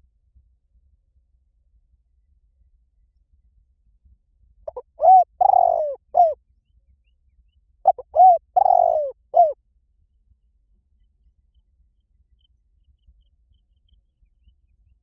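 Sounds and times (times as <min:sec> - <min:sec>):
dove cooing: 0:04.7 - 0:06.4, 0:07.9 - 0:09.6.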